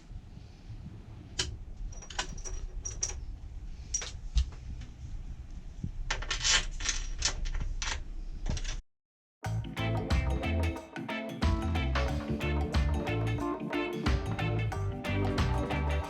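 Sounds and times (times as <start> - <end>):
small metal parts clicking: 1.4 - 3.3, 3.9 - 4.2
metal clinking and rattling: 1.4 - 4.4, 6.1 - 8.8.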